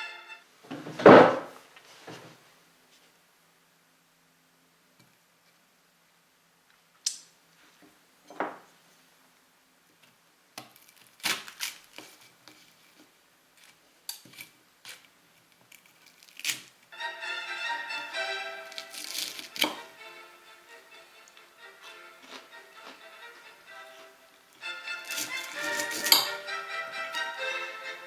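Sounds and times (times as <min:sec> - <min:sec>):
cutlery clinking on a plate: 0:25.1 - 0:26.4.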